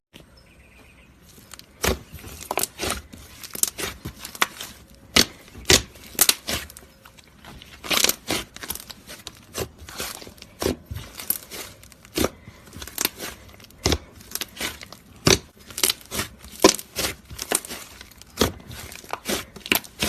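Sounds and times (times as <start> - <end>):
slime squished by hand: 7.6 - 20.0.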